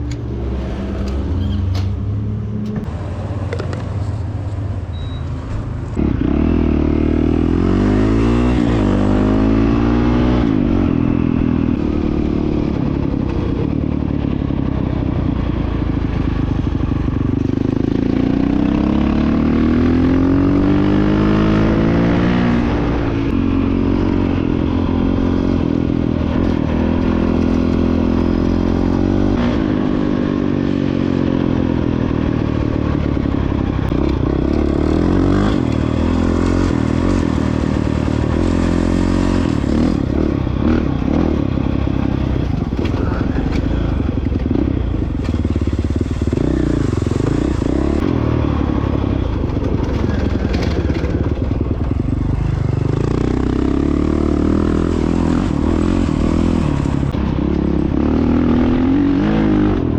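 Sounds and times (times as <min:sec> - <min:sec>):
dirt bike engine revving: 0:06.0 - 0:11.0, 0:33.6 - 0:49.0, 0:52.6 - 0:59.9.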